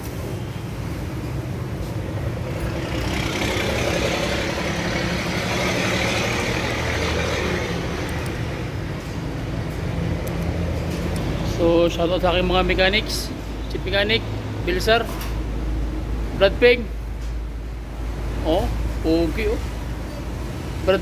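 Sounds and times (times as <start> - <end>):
vehicle engine running: 0.7 - 12.0.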